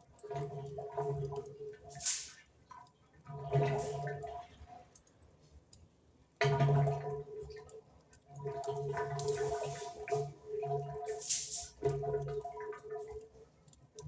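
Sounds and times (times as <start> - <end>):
wood fire crackling: 0.1 - 5.9, 8.1 - 10.0, 11.0 - 11.8
brief hiss: 2.0 - 2.4, 11.2 - 11.7.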